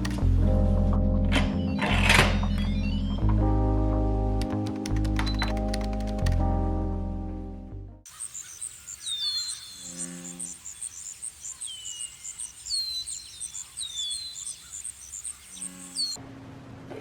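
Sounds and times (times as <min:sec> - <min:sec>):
insects chirping: 0:08.1 - 0:16.2.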